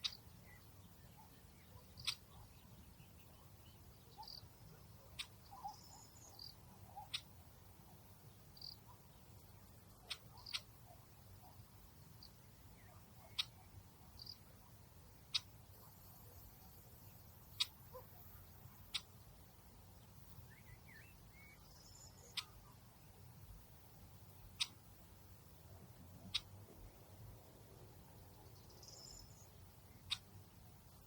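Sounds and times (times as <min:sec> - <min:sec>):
sharp ticks: 0:15.3 - 0:15.9, 0:17.4 - 0:19.1.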